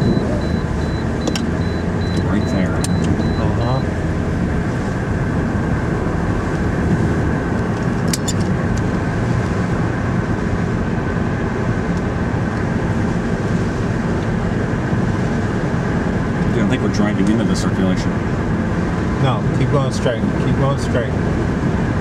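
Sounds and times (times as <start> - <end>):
car road and engine noise: 0.0 - 22.0.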